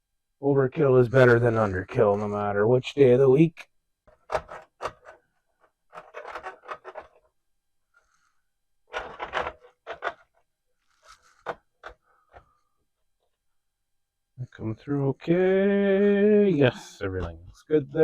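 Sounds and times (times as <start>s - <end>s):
plastic parts clicking and scraping: 4.1s - 7.3s, 8.9s - 12.6s.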